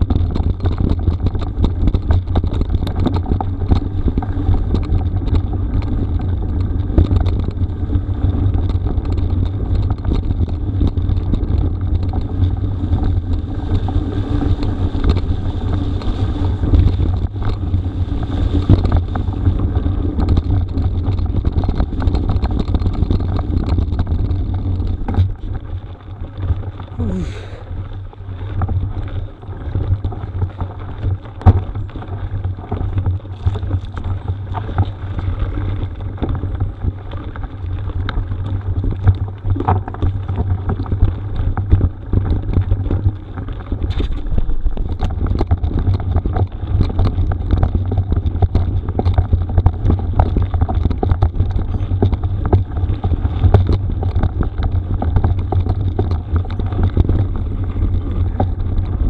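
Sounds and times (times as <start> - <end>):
bike rattling and knocking: 0.0 - 59.0
bike tyres rumbling on gravel: 0.0 - 59.0
wind buffeting microphone: 0.0 - 59.0.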